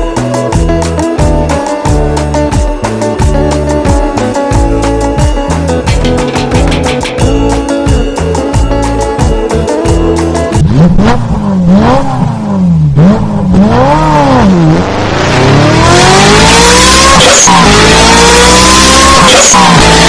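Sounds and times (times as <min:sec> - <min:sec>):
motorcycle engine revving: 0:09.2 - 0:20.0.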